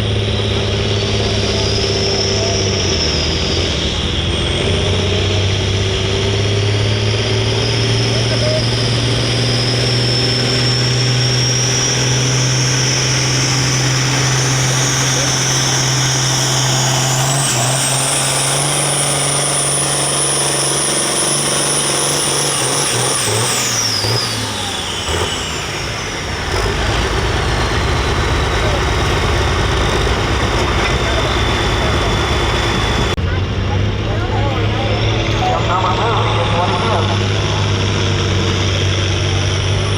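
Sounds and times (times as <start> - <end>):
tractor engine running under load: 0.0 - 39.9
low rumble: 25.8 - 39.9.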